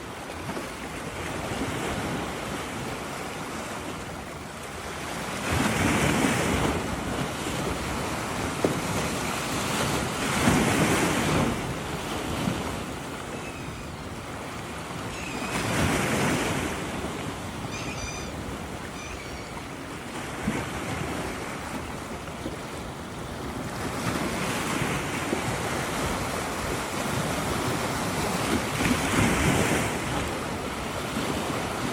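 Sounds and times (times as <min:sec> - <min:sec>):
waves breaking: 0:00.0 - 0:31.9
wind: 0:00.0 - 0:31.9
seagull calls: 0:15.1 - 0:15.7, 0:17.6 - 0:19.8.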